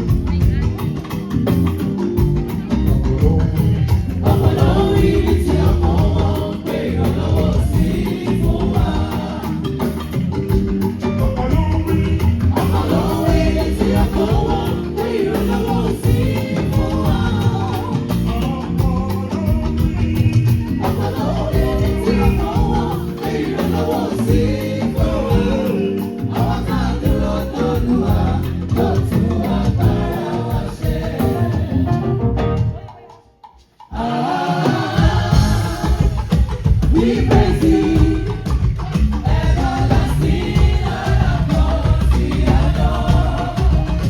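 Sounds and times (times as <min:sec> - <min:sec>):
bass guitar and drums: 0:00.0 - 0:34.1, 0:34.7 - 0:44.0
choir singing gospel song: 0:01.0 - 0:44.0.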